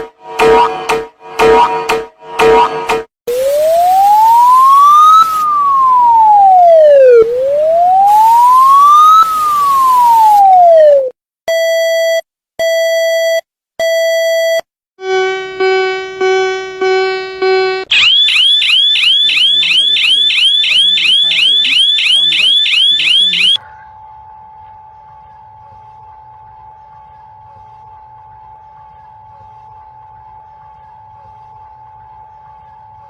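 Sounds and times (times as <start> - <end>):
wailing siren tone: 0.0 - 11.2, 15.0 - 33.0
long beeps: 13.8 - 23.6
buzzy alarm tone pulsing: 15.0 - 23.6.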